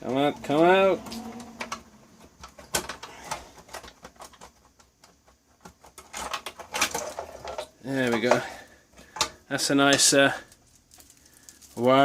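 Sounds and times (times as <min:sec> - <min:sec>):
plug connectors clicking and rattling: 0:00.0 - 0:08.4.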